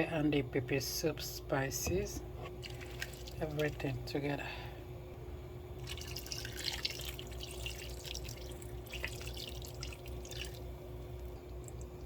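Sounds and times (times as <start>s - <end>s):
low steady hum: 0.0s - 12.0s
liquid dripping and splashing in pot: 2.6s - 3.9s, 5.8s - 12.0s.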